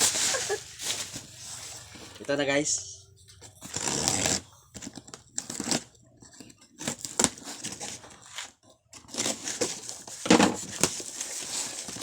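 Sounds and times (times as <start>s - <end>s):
packaging tearing and crinkling: 6.6s - 8.1s.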